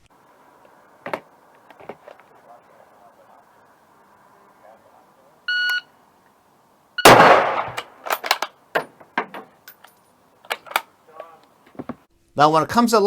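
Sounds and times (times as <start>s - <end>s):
rifle shot with echo: 7.0s - 8.1s.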